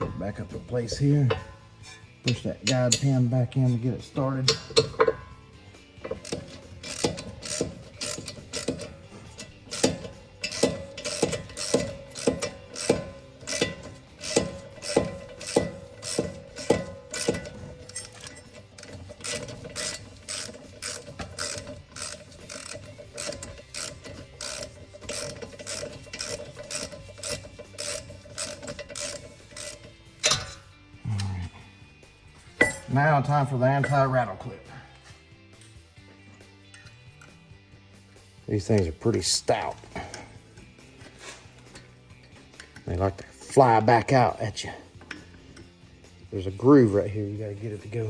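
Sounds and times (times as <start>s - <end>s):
hand ratchet clicking: 2.3s - 3.3s, 4.4s - 5.3s, 6.0s - 30.6s, 45.0s - 45.9s.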